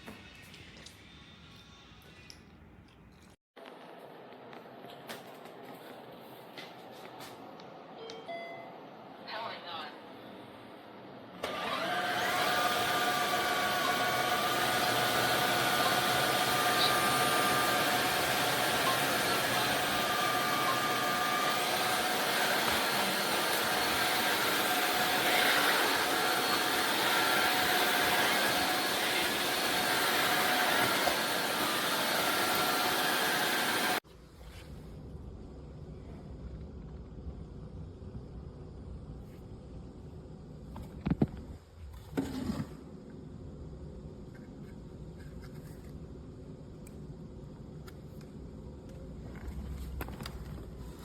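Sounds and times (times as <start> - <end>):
floor cleaner motor whine: 11.4 - 34.0.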